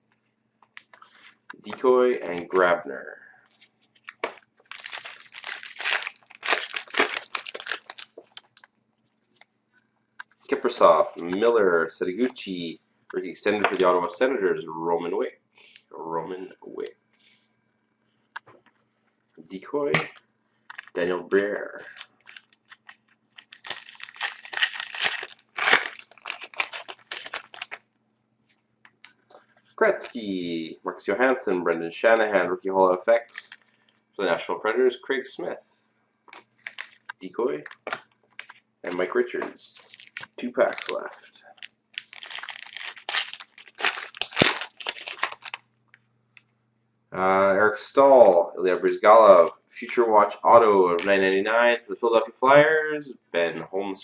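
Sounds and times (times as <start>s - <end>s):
foil wrapper tearing and crinkling: 4.0s - 8.7s, 21.8s - 27.8s, 39.8s - 45.6s.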